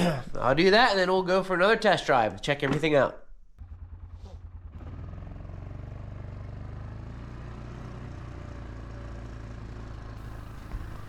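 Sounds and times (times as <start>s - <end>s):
atv engine running: 3.6s - 11.0s.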